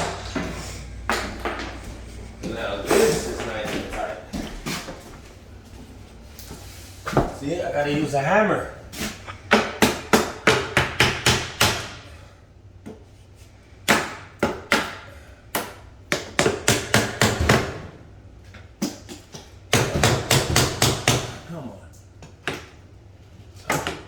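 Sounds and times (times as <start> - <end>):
hammer striking wooden frame: 9.5 - 12.1, 15.6 - 17.8, 19.7 - 21.4.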